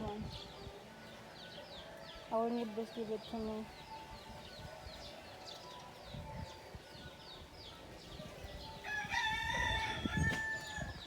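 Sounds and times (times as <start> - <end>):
small birds chirping: 0.0 - 11.0
rooster crowing: 8.8 - 11.0.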